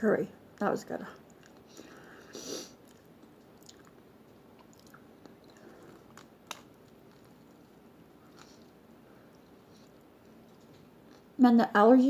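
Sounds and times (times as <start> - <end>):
chewing sandwich: 1.2 - 11.4.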